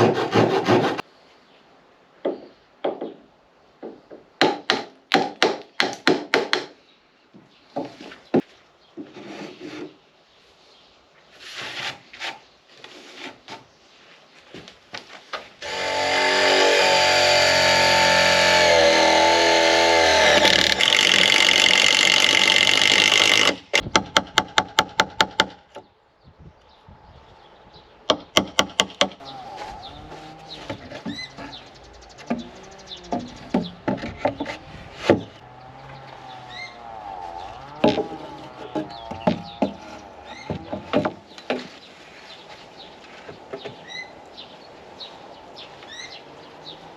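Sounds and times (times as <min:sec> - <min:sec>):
power drill running: 0:15.6 - 0:23.6.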